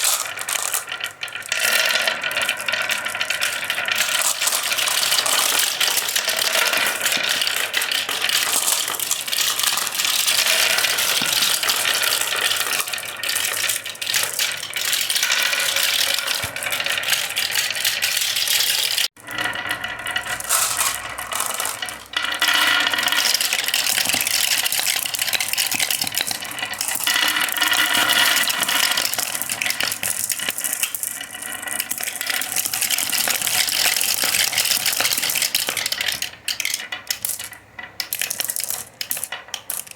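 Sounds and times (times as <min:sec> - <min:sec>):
marbles clattering down wooden run: 0:00.0 - 0:39.9.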